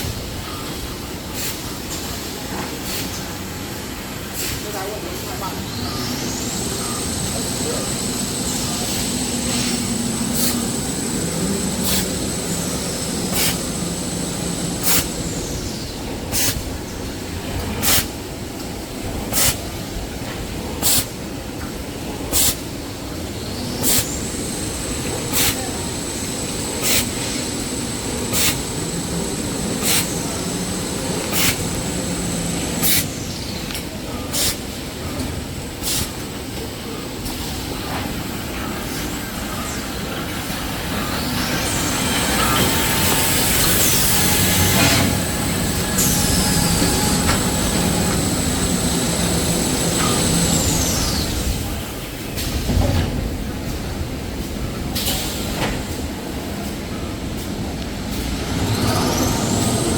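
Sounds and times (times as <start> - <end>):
steady machine noise: 5.3 - 59.9
rising and falling high whine: 6.1 - 16.3, 24.0 - 33.3, 40.4 - 52.0.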